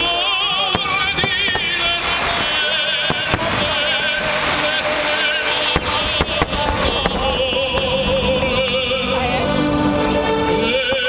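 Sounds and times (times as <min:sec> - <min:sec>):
fireworks bursting: 0:00.0 - 0:08.8
orchestral music over loudspeakers: 0:00.0 - 0:11.0.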